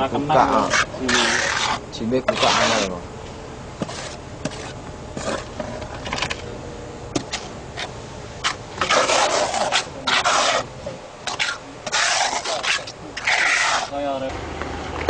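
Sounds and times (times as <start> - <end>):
tool scraping hard surface: 0.4 - 3.0, 3.8 - 6.4, 7.2 - 14.0.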